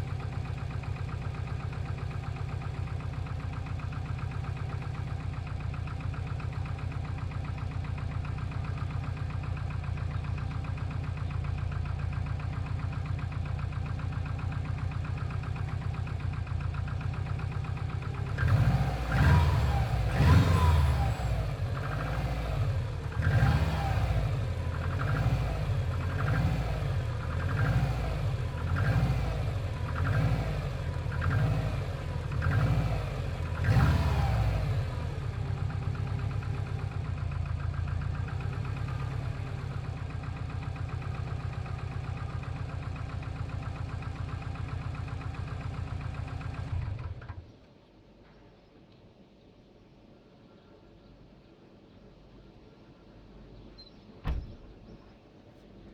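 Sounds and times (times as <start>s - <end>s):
engine idling with knock: 0.0s - 47.6s, 54.2s - 55.1s
engine revving: 18.2s - 35.5s.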